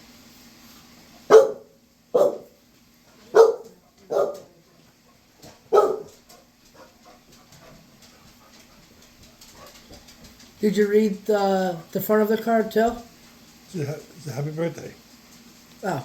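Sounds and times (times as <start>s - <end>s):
dog barking: 1.3s - 2.6s, 3.3s - 4.6s, 5.6s - 6.9s.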